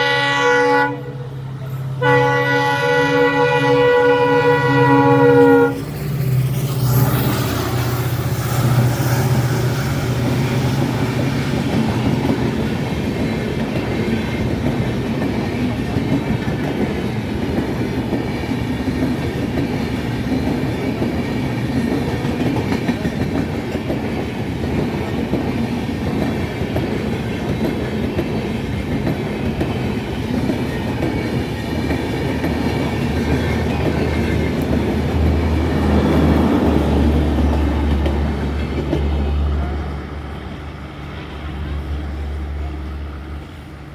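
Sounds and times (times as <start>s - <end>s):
locomotive engine hum: 0.0s - 43.9s
train wheel clatter: 5.3s - 39.8s.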